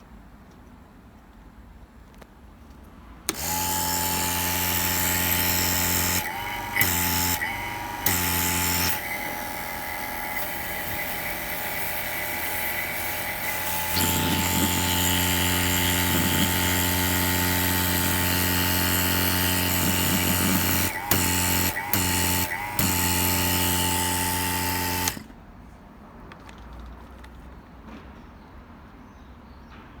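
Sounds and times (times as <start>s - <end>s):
vacuum pump motor hum: 3.3s - 25.3s.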